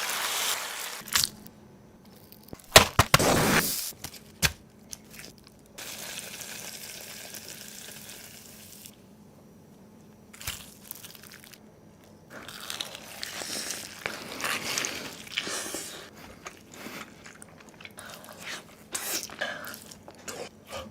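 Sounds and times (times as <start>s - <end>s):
steady hiss: 0.0s - 1.0s
crunchy sandwich chewing: 12.3s - 20.8s.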